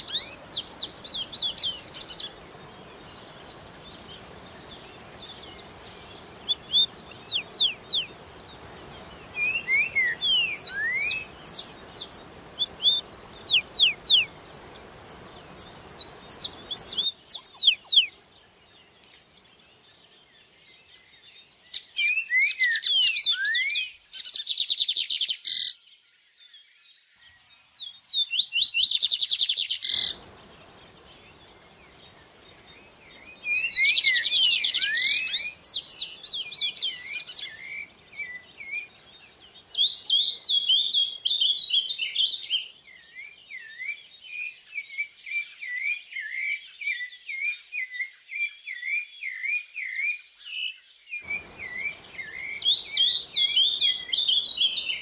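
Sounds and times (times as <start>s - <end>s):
stream water rushing: 0.0s - 18.3s, 29.9s - 42.6s, 51.3s - 55.0s
songbirds singing: 0.0s - 55.0s.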